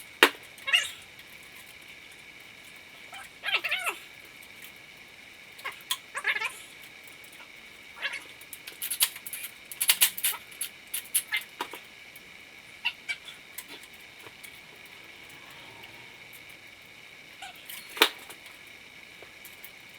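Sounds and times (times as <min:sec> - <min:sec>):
short high squeals: 0:14.7 - 0:16.7.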